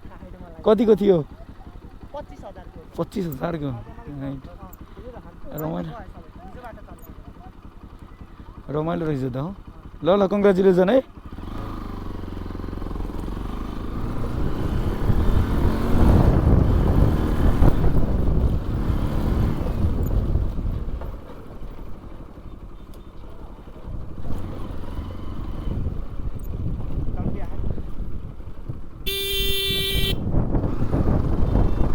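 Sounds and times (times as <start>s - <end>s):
motorcycle engine revving: 0.0s - 31.9s
road noise: 0.0s - 31.9s
wind noise: 14.3s - 21.0s, 25.6s - 31.9s.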